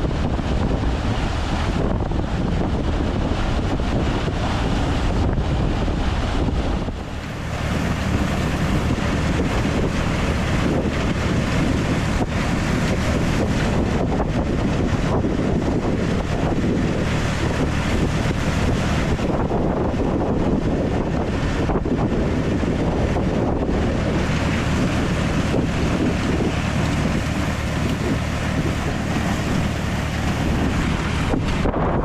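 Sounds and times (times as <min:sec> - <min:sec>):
wind buffeting microphone: 0:00.0 - 0:32.0
tractor engine running: 0:06.9 - 0:20.5, 0:22.0 - 0:32.0.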